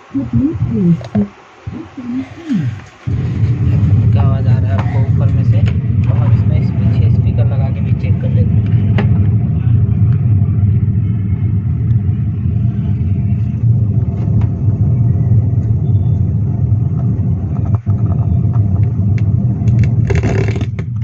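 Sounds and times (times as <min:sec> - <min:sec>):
short crackle: 0:15.6 - 0:21.0.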